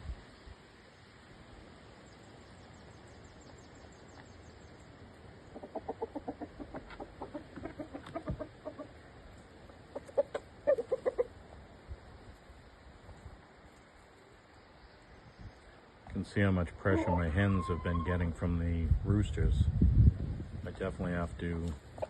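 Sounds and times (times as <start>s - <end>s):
chickens clucking: 5.2s - 11.6s, 16.4s - 18.4s, 21.5s - 22.0s.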